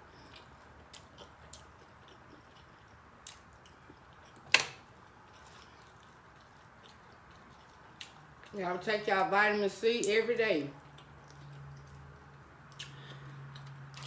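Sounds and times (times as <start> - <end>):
person chewing: 0.0 - 4.4, 5.0 - 8.6, 10.8 - 14.0.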